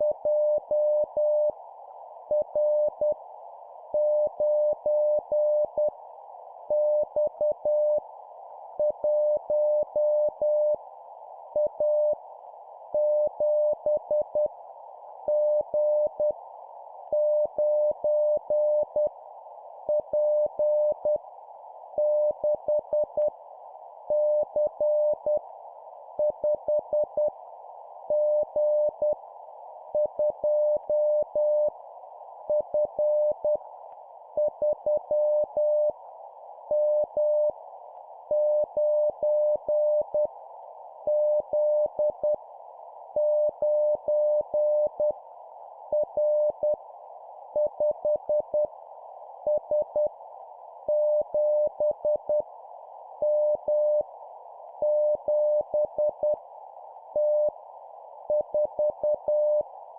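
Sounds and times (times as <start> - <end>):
receiver hiss: 0.0 - 59.9
morse code beeps: 54.8 - 56.3, 58.4 - 59.6.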